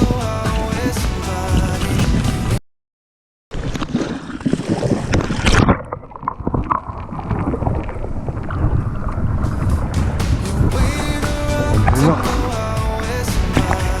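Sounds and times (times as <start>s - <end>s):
wind buffeting microphone: 6.4s - 12.0s.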